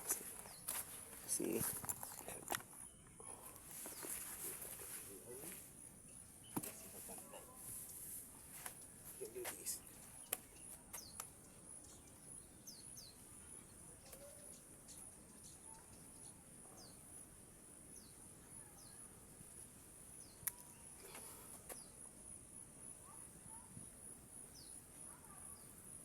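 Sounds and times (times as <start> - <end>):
riverside ambience: 0.0 - 12.6
birds chirping: 0.0 - 26.0.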